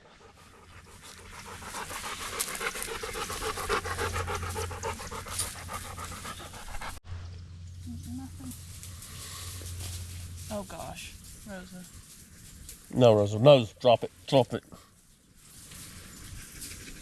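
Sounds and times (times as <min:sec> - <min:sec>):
dog panting: 0:00.0 - 0:07.0.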